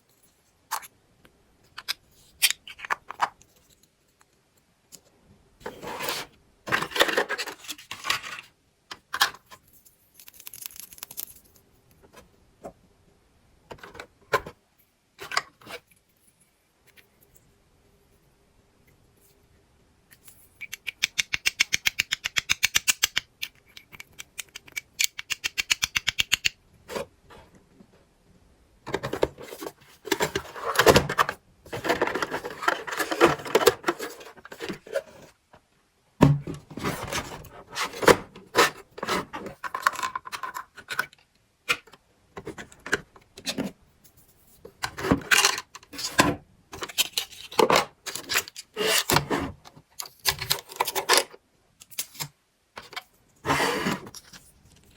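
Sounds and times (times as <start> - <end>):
plastic pieces clattering and scraping: 5.6 - 9.6, 28.9 - 35.3, 44.8 - 49.4, 50.0 - 54.9.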